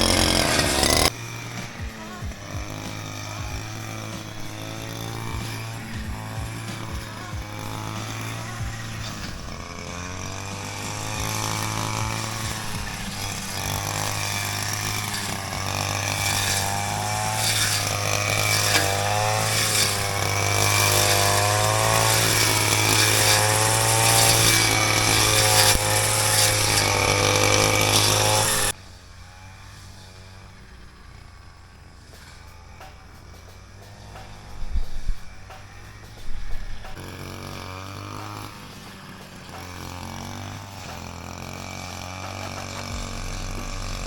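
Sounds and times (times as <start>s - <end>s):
petrol strimmer cutting brush: 0.0s - 44.0s.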